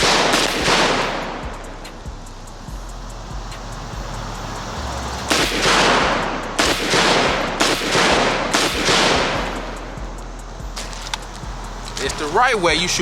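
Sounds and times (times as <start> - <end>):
pistol firing bursts with echo: 0.0 - 1.4, 5.3 - 9.8.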